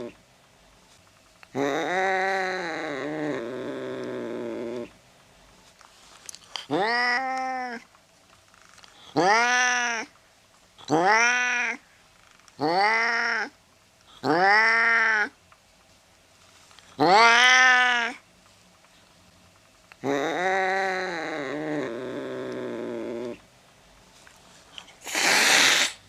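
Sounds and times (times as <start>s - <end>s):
cat meowing: 6.7s - 7.8s, 9.2s - 10.1s, 10.9s - 11.8s, 12.6s - 13.5s, 14.2s - 15.4s, 17.0s - 18.2s.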